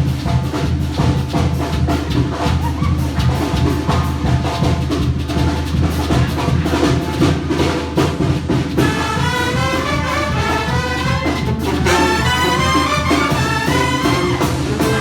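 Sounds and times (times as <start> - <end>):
drums and percussion: 0.0 - 15.0
brass section playing melody: 8.8 - 15.0.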